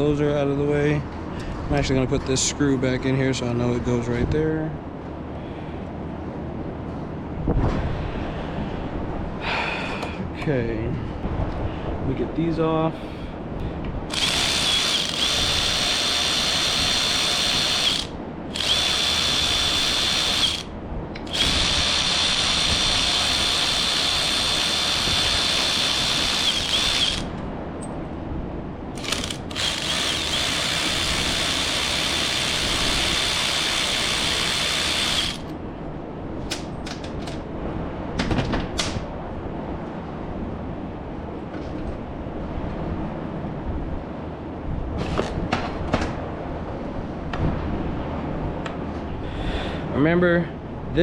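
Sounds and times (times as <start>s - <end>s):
power driver whining: 14.1s - 27.4s, 29.0s - 35.6s.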